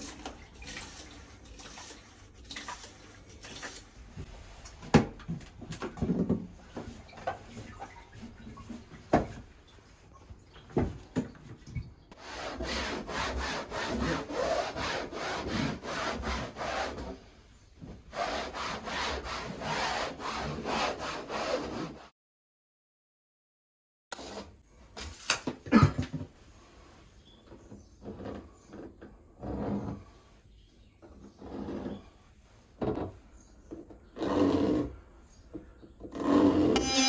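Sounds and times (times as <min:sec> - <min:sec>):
hand saw cutting: 0:12.2 - 0:17.1, 0:18.2 - 0:22.0, 0:36.8 - 0:37.0.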